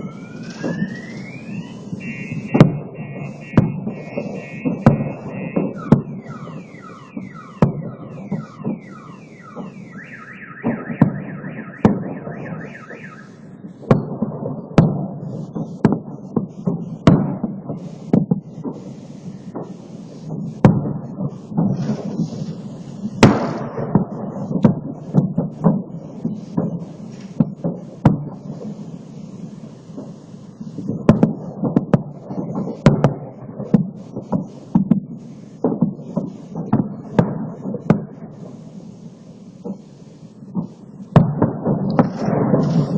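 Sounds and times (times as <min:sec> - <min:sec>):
falling whistle: 0:00.0 - 0:13.4
car alarm warbling: 0:00.0 - 0:13.7
echoing booms: 0:00.0 - 0:42.9
fireworks bangs: 0:00.0 - 0:42.9.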